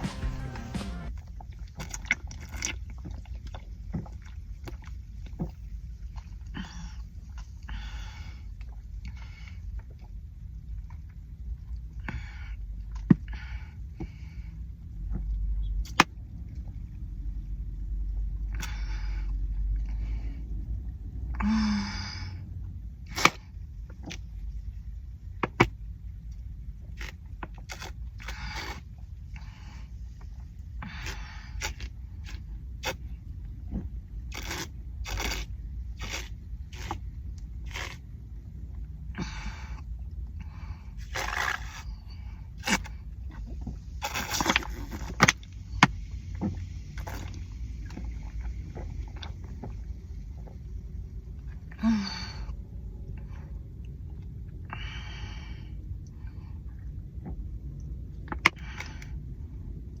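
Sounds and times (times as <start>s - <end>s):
low background rumble: 0.0s - 60.0s
breaths and gasps: 6.5s - 9.7s.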